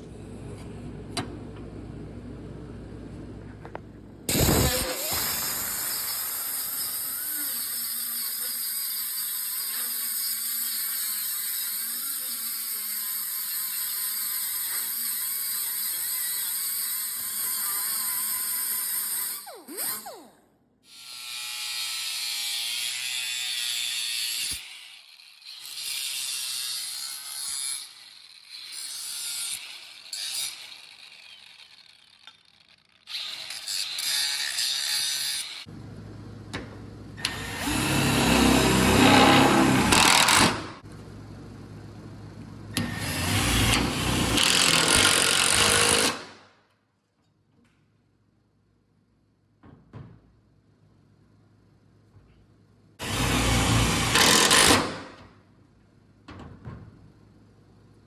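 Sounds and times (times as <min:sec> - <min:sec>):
high-pitched power tool running: 0:04.3 - 0:12.9, 0:17.5 - 0:21.2.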